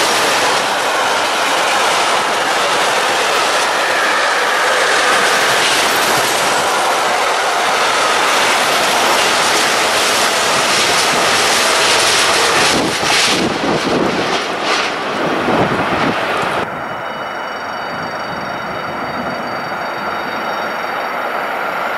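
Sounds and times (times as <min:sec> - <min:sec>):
freight train passing: 0:00.0 - 0:21.9.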